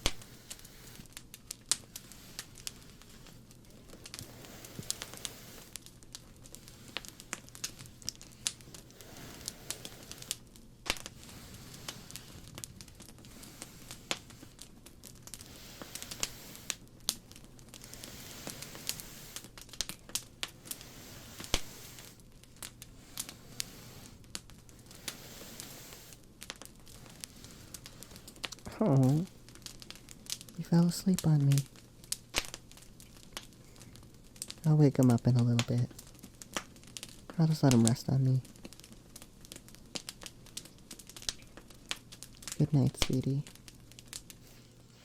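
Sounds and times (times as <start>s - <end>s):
fire crackling and popping: 0.0s - 45.0s
soft steady hiss: 0.0s - 45.0s.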